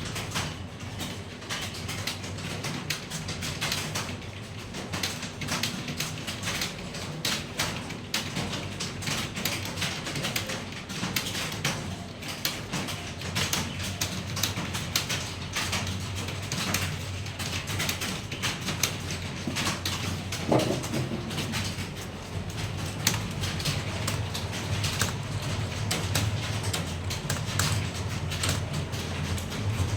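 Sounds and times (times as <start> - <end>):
fast keyboard typing: 0.0 - 29.9
steady low hum: 13.4 - 29.9.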